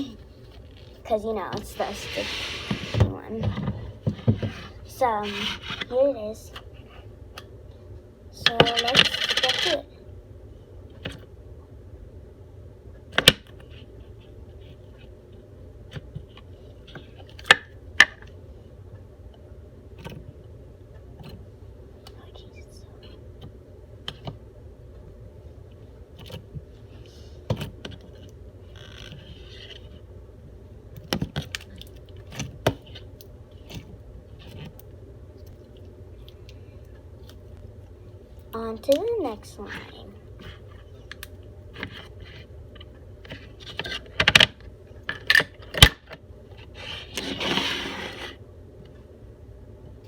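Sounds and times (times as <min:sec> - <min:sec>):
steady low background hum: 0:00.0 - 0:50.0
rustling scrape: 0:00.4 - 0:06.0, 0:46.6 - 0:48.4.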